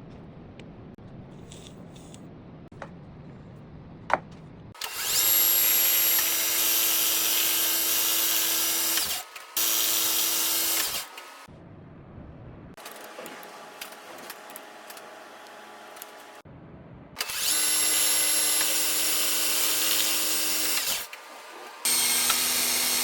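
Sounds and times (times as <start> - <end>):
power tool motor whining: 4.8 - 11.5, 17.2 - 23.0.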